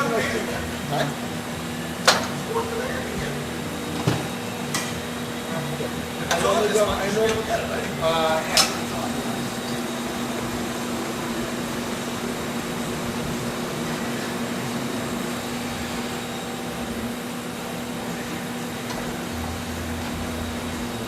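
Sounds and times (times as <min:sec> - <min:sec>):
mechanical hum and whir: 0:00.0 - 0:21.0.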